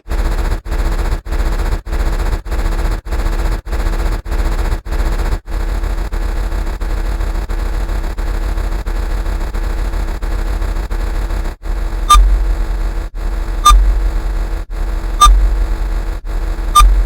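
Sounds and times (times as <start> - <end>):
distorted rumbling noise effect: 10.7 - 17.0.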